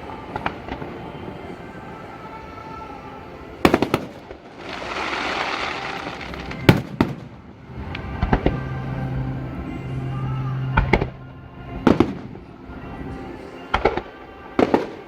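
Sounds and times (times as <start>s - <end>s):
fireworks hissing crackle: 3.6s - 8.6s
fireworks bangs: 3.6s - 8.7s.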